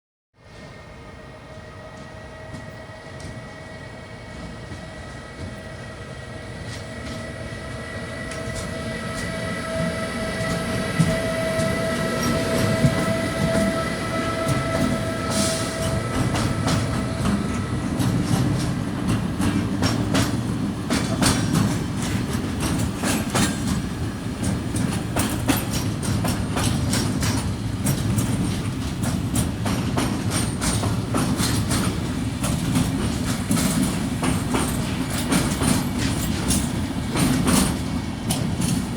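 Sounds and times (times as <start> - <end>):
locomotive whine: 0.5 - 38.9
wheels clacking over rail joints: 9.7 - 38.9.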